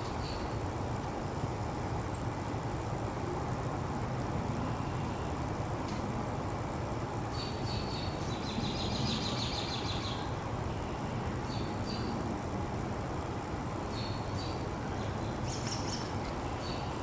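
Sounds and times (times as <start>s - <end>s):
bird chirping trills: 0.0s - 0.6s, 7.3s - 12.1s, 13.9s - 17.0s.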